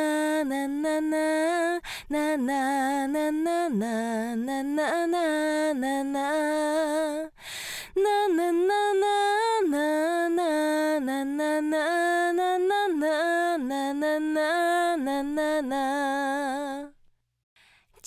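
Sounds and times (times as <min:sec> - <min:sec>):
woman singing wordless melody: 0:00.0 - 0:17.1
woman's breath: 0:01.8 - 0:02.1, 0:07.3 - 0:08.0, 0:17.6 - 0:18.0.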